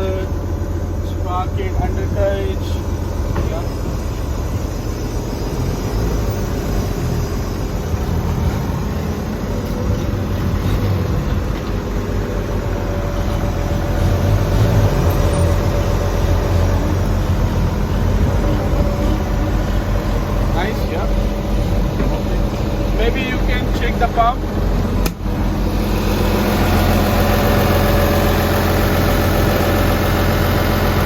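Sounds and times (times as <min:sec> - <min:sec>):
diesel excavator idling: 0:00.0 - 0:31.0.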